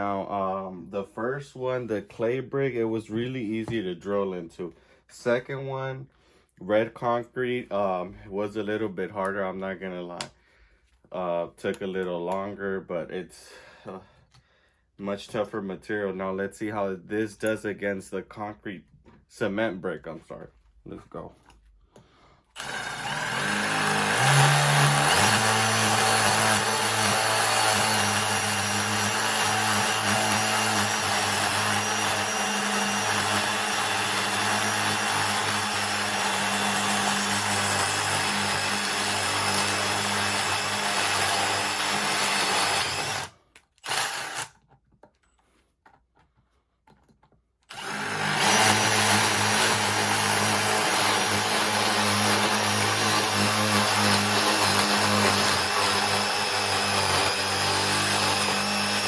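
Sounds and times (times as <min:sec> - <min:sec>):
impact driver drilling into brick: 0:22.6 - 0:44.6, 0:47.7 - 0:59.0.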